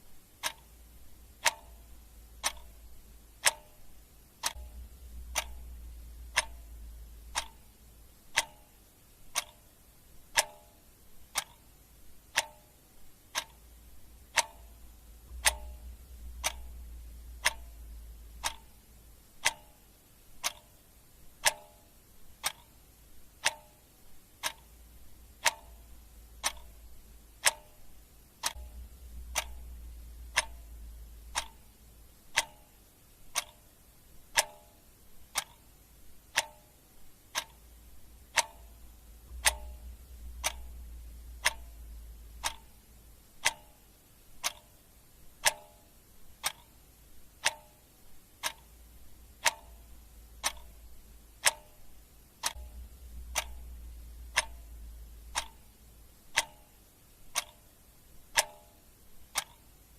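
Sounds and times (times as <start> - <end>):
clock ticking: 0.0 - 59.9
faint low hum: 0.0 - 59.9.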